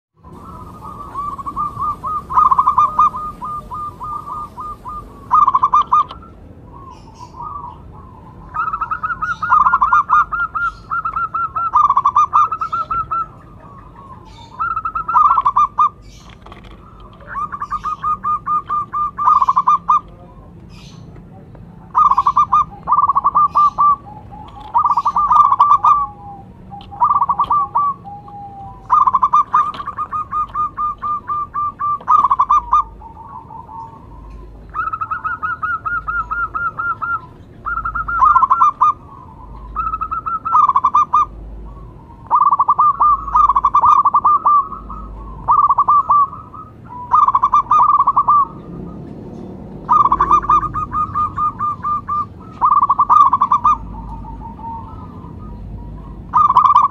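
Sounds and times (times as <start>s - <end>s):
dove cooing: 0.2s - 56.9s.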